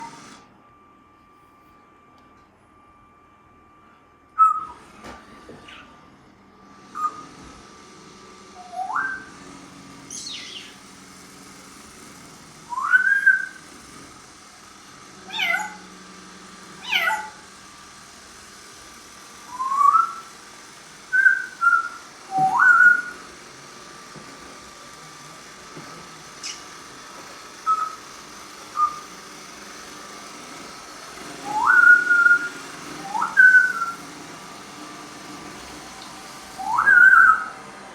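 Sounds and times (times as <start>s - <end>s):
parrot whistling: 4.4s - 4.8s, 6.9s - 7.2s, 8.6s - 9.3s, 10.1s - 10.8s, 12.7s - 13.6s, 15.3s - 15.9s, 16.8s - 17.4s, 19.5s - 20.3s, 21.1s - 23.2s, 27.6s - 28.0s, 28.7s - 29.1s, 31.4s - 34.0s, 36.6s - 37.6s
parrot mimicking cat meow: 15.3s - 15.8s, 16.8s - 17.4s.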